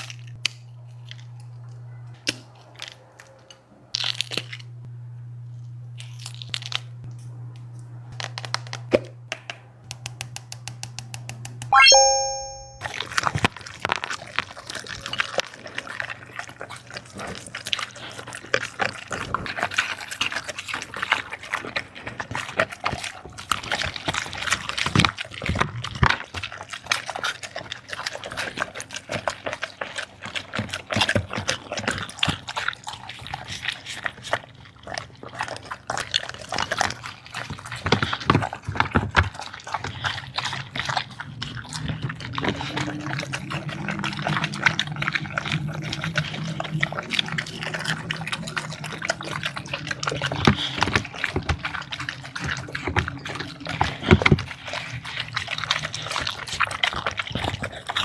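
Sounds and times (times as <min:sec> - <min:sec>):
dog chewing wet food: 0:00.0 - 0:04.7, 0:13.2 - 0:58.0
low steady hum: 0:11.8 - 0:12.8.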